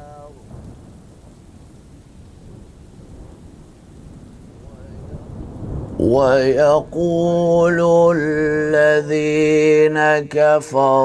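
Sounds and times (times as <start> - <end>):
low thunder rumble: 0.0 - 11.0
steady rain noise: 0.0 - 11.0
echoing reciting voice: 6.0 - 11.0.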